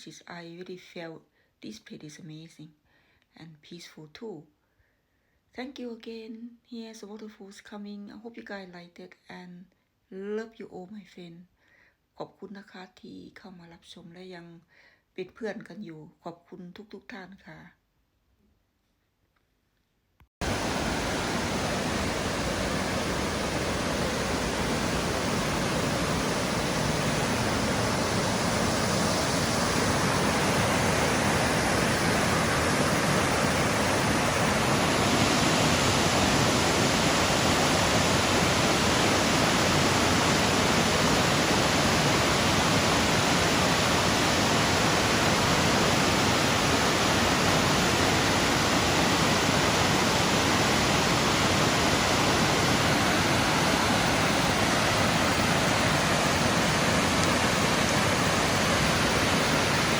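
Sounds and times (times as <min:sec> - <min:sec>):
waterfall rushing: 0:20.4 - 0:59.9.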